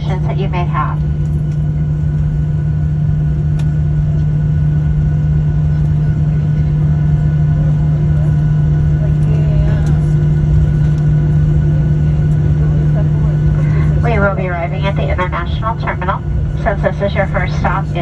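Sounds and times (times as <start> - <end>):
airliner cabin rumble: 0.0 - 18.0.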